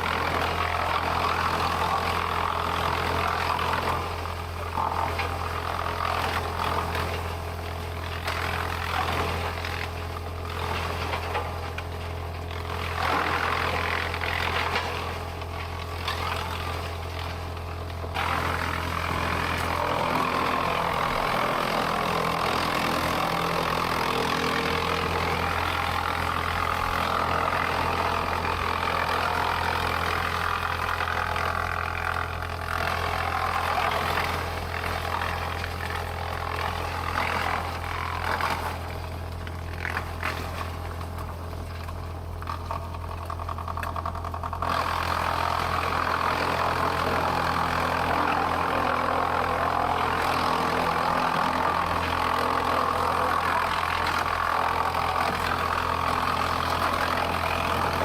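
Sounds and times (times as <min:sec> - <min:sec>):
sawmill machinery humming: 0:00.0 - 0:58.0.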